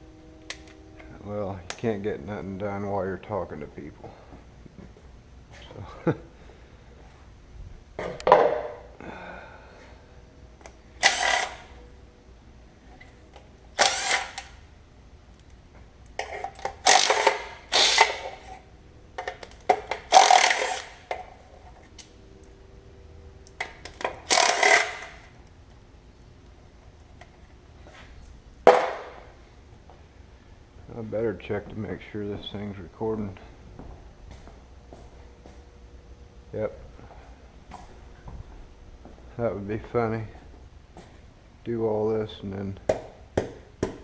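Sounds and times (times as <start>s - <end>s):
hand tool noise bursts: 11.0s - 11.8s, 13.8s - 14.6s, 16.2s - 18.6s, 19.7s - 21.3s, 23.6s - 25.3s.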